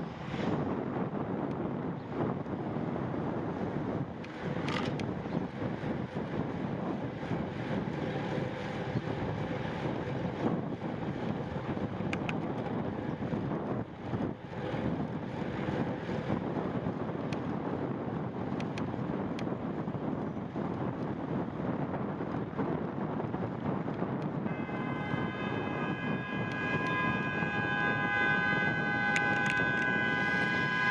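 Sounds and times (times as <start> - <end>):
road noise: 0.0 - 30.9
wind rushing over microphone: 0.0 - 30.9
car horn sounding: 24.5 - 30.9.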